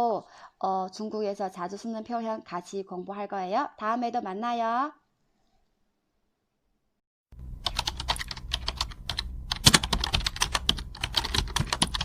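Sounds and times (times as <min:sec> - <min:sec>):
low steady hum: 0:07.4 - 0:12.0
typing on a keyboard: 0:07.6 - 0:12.0.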